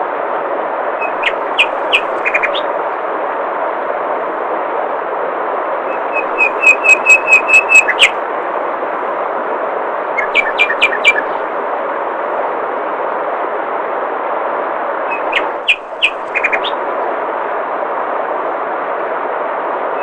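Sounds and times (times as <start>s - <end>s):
songbird whistling: 1.0s - 2.7s, 5.9s - 8.2s, 10.2s - 11.3s, 15.1s - 16.8s.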